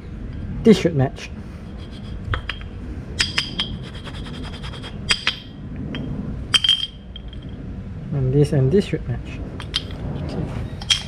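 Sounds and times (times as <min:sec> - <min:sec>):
metal brake pads clinking: 0:05.1 - 0:07.6, 0:09.6 - 0:11.0.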